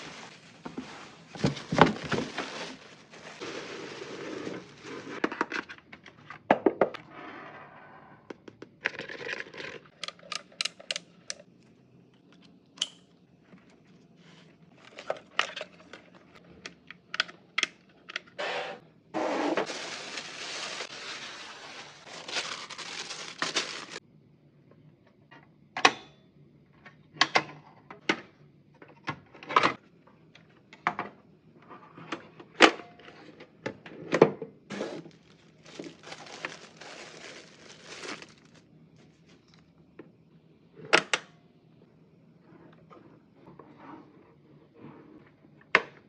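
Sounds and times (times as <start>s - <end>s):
packaging rustling: 0.0s - 5.3s, 19.2s - 24.0s, 34.7s - 39.5s.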